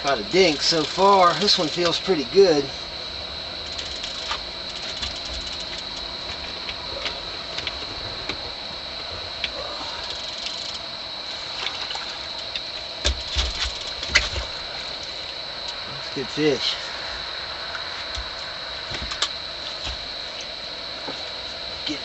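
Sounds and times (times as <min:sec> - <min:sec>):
high-pitched hum: 0:00.0 - 0:22.0
fishing reel clicks and rattles: 0:00.2 - 0:02.7, 0:03.6 - 0:06.2, 0:10.0 - 0:10.9, 0:12.4 - 0:14.4.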